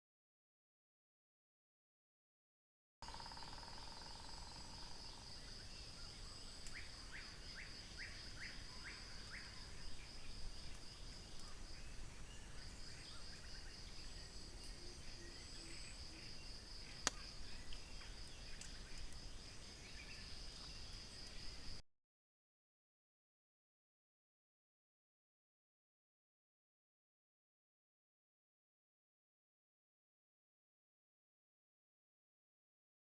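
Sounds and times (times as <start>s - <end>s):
bird calls: 3.0s - 21.8s
insects trilling: 3.0s - 21.8s.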